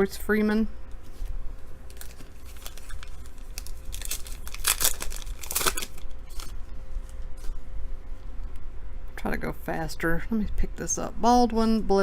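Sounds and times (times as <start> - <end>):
card pack wrapper tearing: 1.8 - 6.6
loud wrapper rips: 1.8 - 6.6.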